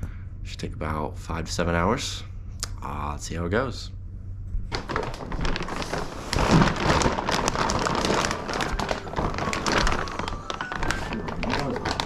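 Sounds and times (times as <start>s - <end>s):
dense crackling and rustling: 4.7s - 12.0s.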